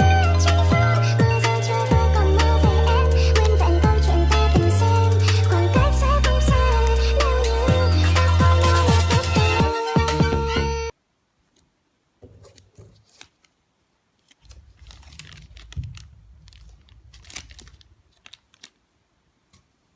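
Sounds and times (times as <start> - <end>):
background music: 0.0 - 10.9
package crinkling and tearing: 12.4 - 13.6, 14.2 - 18.9
low handling rumble: 14.8 - 18.1.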